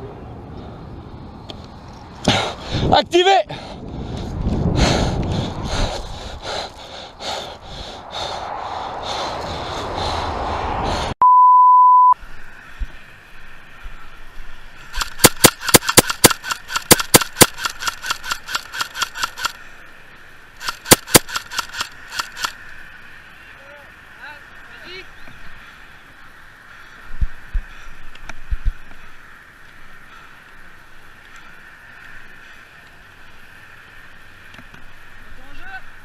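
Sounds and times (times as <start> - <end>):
loud steady beep: 11.2 - 12.2
rustling and movement: 12.2 - 22.9
scattered clicks: 14.9 - 19.6, 20.6 - 22.6
airsoft guns firing: 15.0 - 19.6, 20.6 - 22.5.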